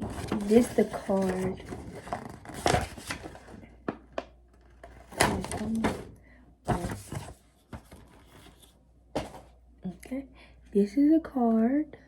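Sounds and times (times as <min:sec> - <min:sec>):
paper packaging rustling: 0:00.0 - 0:03.7, 0:04.6 - 0:06.1, 0:06.7 - 0:09.4.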